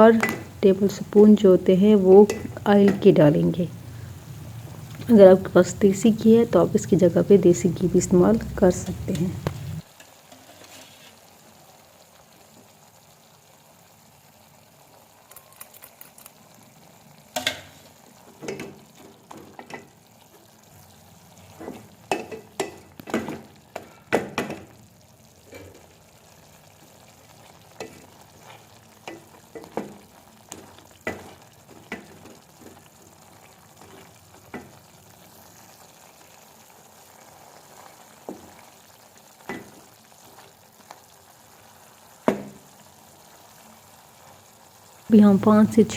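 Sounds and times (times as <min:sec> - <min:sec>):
chicken sizzling in oil: 0:00.0 - 0:15.5, 0:16.3 - 0:45.9.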